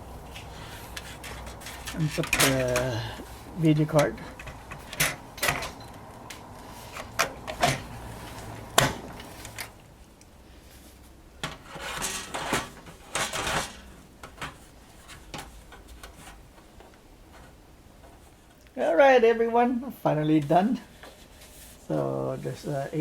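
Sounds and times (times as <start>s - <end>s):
rustling: 0.0s - 18.9s, 20.2s - 23.0s
pc parts clicking and knocking: 0.4s - 3.0s, 3.8s - 7.9s.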